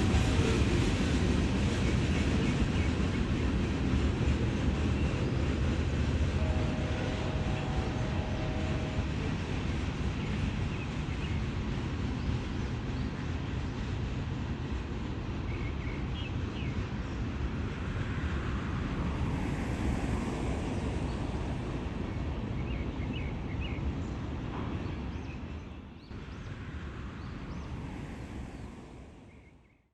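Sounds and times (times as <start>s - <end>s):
freight train wheels rumbling: 0.0s - 29.2s
locomotive horn chord: 6.4s - 9.5s.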